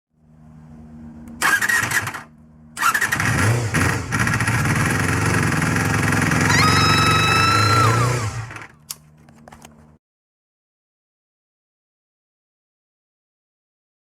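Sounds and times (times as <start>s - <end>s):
motorcycle engine starting: 1.2s - 9.0s
rising held tones: 6.4s - 8.6s.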